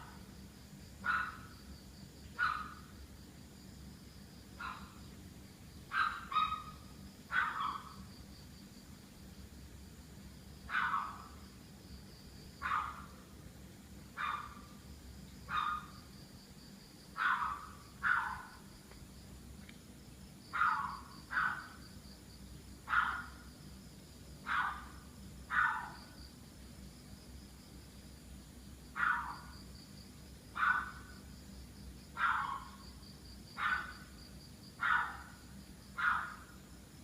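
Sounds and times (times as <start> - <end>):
crickets chirping: 0.0 - 37.0
dog barking: 1.0 - 1.5, 2.4 - 2.9, 4.6 - 5.0, 5.9 - 8.0, 10.7 - 11.4, 12.6 - 13.1, 14.2 - 14.7, 15.5 - 15.9, 17.2 - 18.6, 20.5 - 21.8, 22.9 - 23.4, 24.4 - 26.0, 29.0 - 29.5, 30.6 - 31.1, 32.2 - 32.8, 33.6 - 34.1, 34.8 - 35.4, 36.0 - 36.5.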